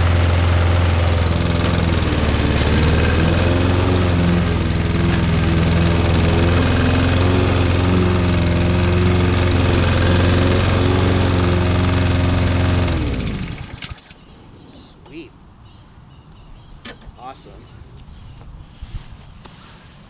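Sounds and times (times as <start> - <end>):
engine winding down: 0.0 - 14.1
lawn mower engine running: 0.0 - 14.2.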